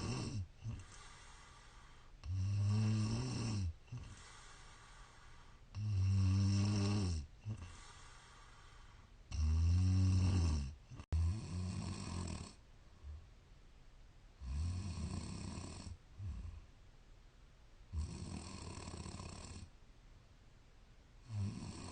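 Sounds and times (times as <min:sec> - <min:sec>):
woman snoring: 0:00.0 - 0:05.2, 0:05.8 - 0:08.6, 0:09.3 - 0:12.6, 0:14.4 - 0:16.6, 0:17.9 - 0:19.7, 0:21.2 - 0:21.9
quiet breathing: 0:00.0 - 0:13.6, 0:14.4 - 0:16.9, 0:17.9 - 0:19.8.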